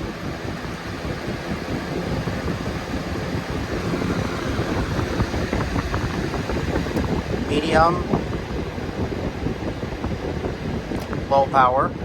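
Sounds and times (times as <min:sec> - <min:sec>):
box fan running: 0:00.0 - 0:12.0
wind buffeting microphone: 0:00.0 - 0:12.0.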